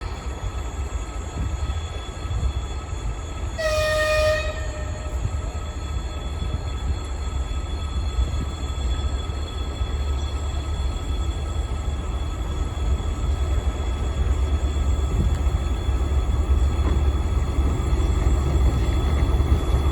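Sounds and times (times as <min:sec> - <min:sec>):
freight train rumbling: 0:00.0 - 0:19.9
train horn blast: 0:03.6 - 0:05.3.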